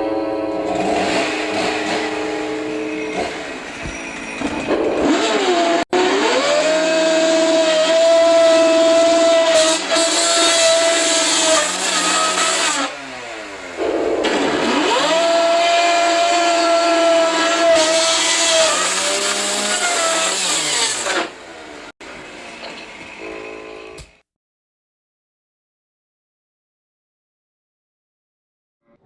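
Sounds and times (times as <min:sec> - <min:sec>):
chainsaw engine revving and idling: 0:00.6 - 0:03.5, 0:04.7 - 0:24.0.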